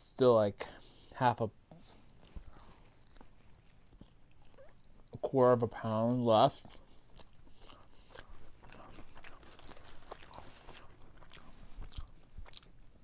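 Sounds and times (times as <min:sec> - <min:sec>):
person chewing crunchy food: 0:01.8 - 0:05.3, 0:06.4 - 0:13.0
mouth clicks and soft crunches: 0:01.8 - 0:05.4, 0:06.4 - 0:13.0.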